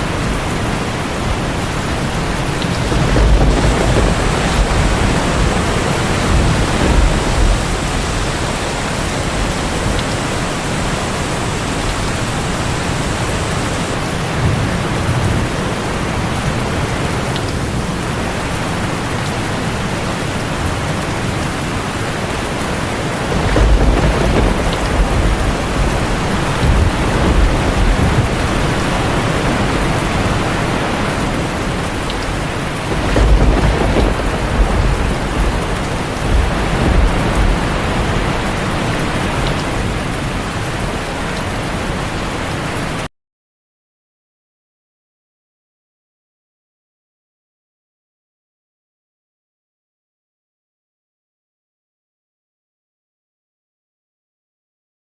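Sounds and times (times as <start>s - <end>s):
rush of falling water: 0.0s - 43.1s.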